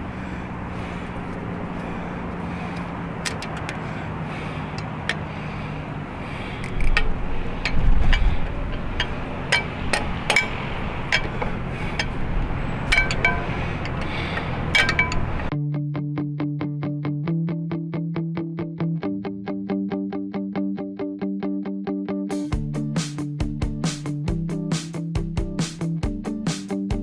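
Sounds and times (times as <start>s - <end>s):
low hum: 0.0s - 15.5s
metal tools clinking: 6.7s - 12.2s, 12.8s - 15.4s.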